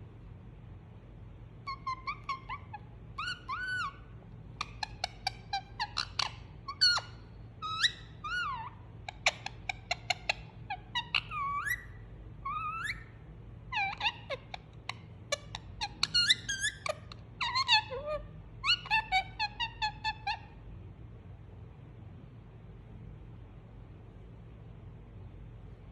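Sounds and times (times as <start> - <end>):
parakeet chattering: 1.6 - 20.6.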